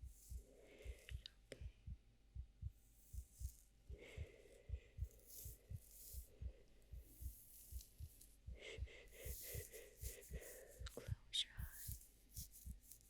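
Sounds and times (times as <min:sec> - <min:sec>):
heartbeat thumps: 0:00.0 - 0:13.0
soft rustling: 0:09.1 - 0:13.0.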